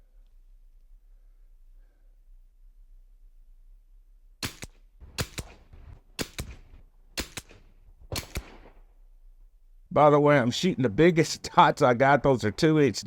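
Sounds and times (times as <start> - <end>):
rifle shots: 4.4 - 8.9.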